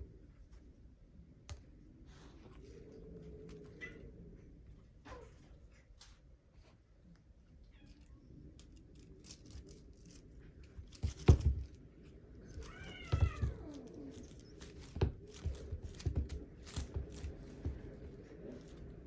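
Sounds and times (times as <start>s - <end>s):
knocks and thumps: 10.9s - 11.8s, 12.6s - 13.8s, 14.7s - 18.1s
kitten meowing: 12.6s - 14.1s.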